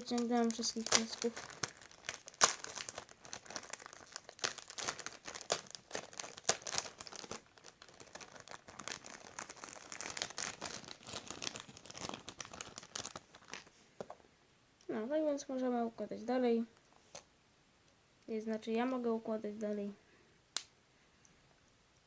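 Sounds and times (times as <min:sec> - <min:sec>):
plastic packaging crinkling: 0:00.0 - 0:14.2.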